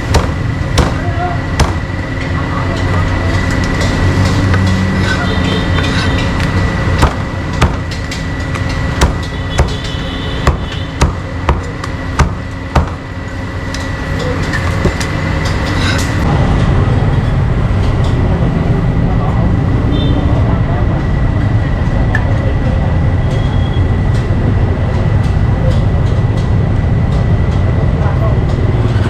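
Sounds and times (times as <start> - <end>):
cleaver chopping meat on wood: 0.0 - 1.9, 5.8 - 13.1
low rumble of traffic: 0.0 - 29.0.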